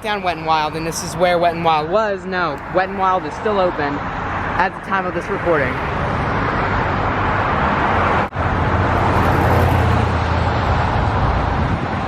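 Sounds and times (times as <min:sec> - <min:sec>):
road traffic passing: 0:00.0 - 0:12.0
heavy vehicle engine hum: 0:05.8 - 0:12.0.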